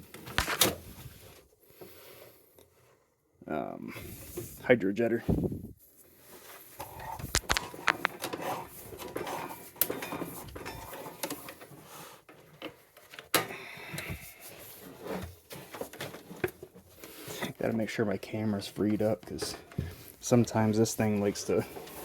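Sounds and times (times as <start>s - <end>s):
equipment clicking and rattling: 7.1s - 8.3s.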